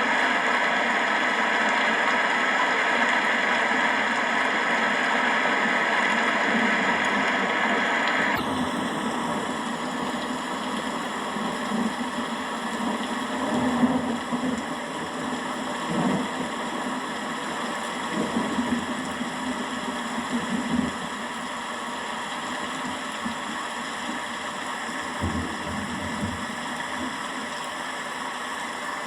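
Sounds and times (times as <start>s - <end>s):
heavy rain hissing: 3.3s - 29.0s
distant thunder rumbling: 8.4s - 21.6s.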